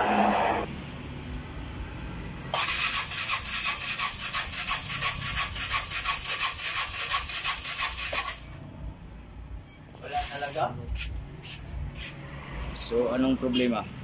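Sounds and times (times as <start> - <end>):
engine cranking on starter: 2.6 - 8.5.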